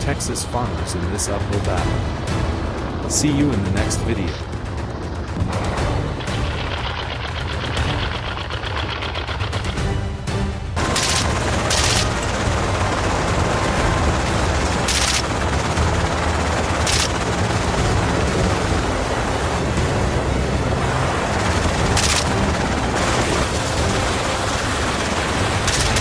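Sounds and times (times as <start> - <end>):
low rumble: 0.6 - 26.0
sharp gunshots: 10.8 - 26.0.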